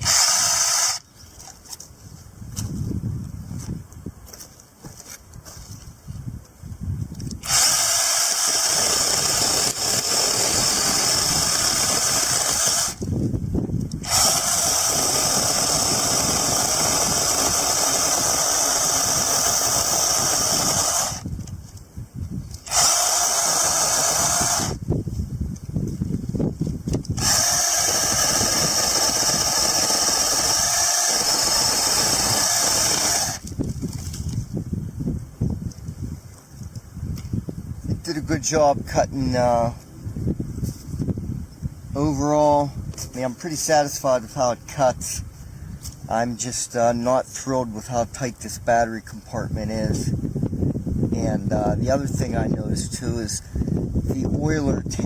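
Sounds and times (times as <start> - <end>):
chainsaw cutting wood: 0.0 - 1.1, 7.4 - 13.2, 13.9 - 21.4, 22.5 - 24.8, 26.9 - 34.3.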